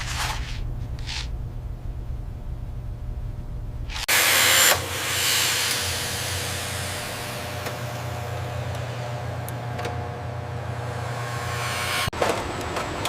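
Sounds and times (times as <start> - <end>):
low hum: 0.0 - 12.1
loud hissing rush: 4.0 - 9.4.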